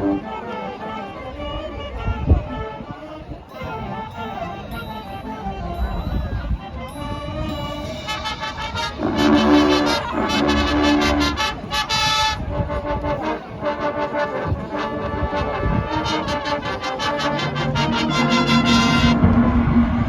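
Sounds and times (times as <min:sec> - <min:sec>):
marching band brass chords: 0:07.6 - 0:20.0.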